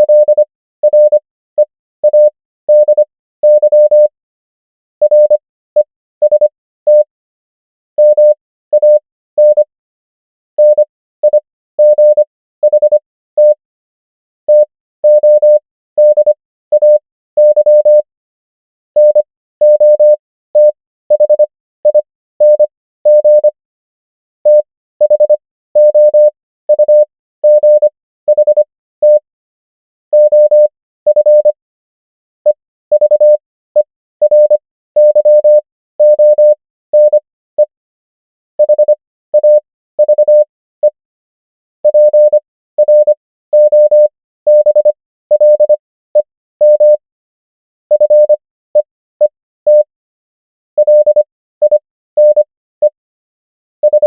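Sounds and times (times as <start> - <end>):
morse code beeps: 0.0 - 1.2, 2.0 - 4.1, 5.0 - 7.1, 8.0 - 9.7, 10.6 - 13.6, 14.5 - 18.1, 19.0 - 23.6, 24.5 - 29.2, 30.1 - 31.6, 32.5 - 37.7, 38.6 - 41.0, 41.8 - 47.0, 47.9 - 49.9, 50.8 - 53.0.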